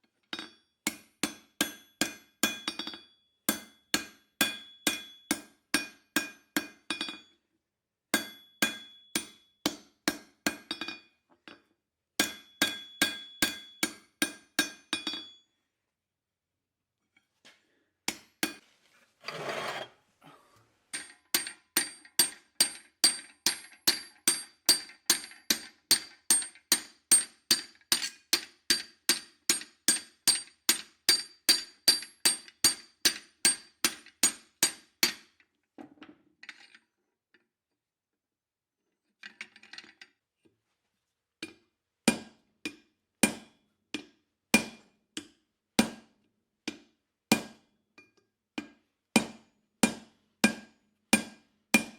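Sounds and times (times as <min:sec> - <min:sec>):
hammer striking steel on anvil: 0:12.2 - 0:15.3
short rasping noise: 0:19.2 - 0:20.0.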